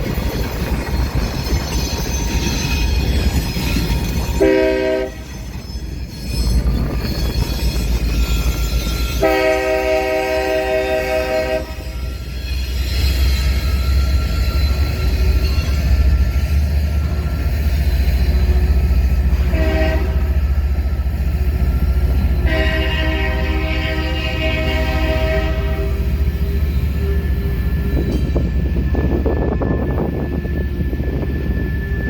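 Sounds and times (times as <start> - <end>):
train rumble: 0.0 - 32.0
locomotive air horn: 4.4 - 5.3, 9.2 - 12.0, 19.3 - 20.5, 22.4 - 26.2.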